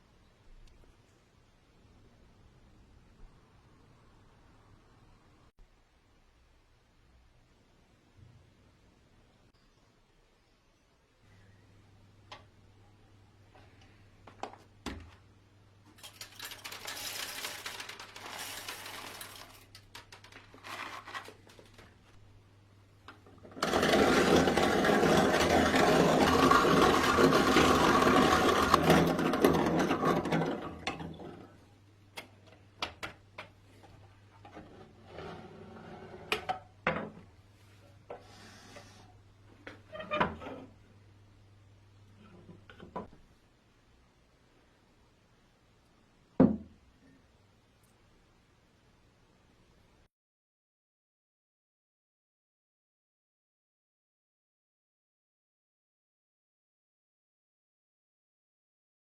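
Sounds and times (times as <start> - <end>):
coffee grinder grinding beans: 16.0 - 21.9, 23.4 - 31.2.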